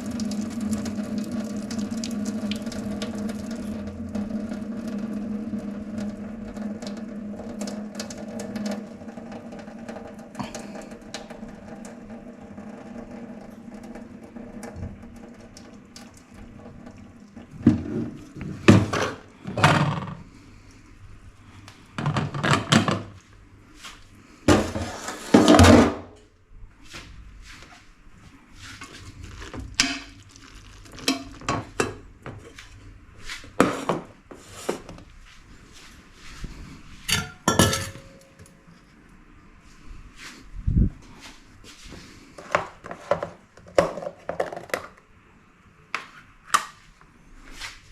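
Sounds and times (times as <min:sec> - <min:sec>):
pots and dishes scraping and knocking: 0:24.5 - 0:26.0, 0:37.1 - 0:38.4
cutlery clinks and taps: 0:37.1 - 0:38.3.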